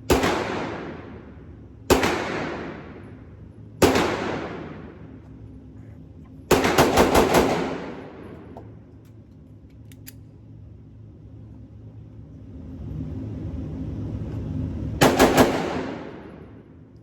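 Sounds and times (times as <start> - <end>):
pistol shots with echo: 0.1 - 1.3, 1.9 - 3.0, 3.8 - 5.0, 6.5 - 8.6, 15.0 - 16.5.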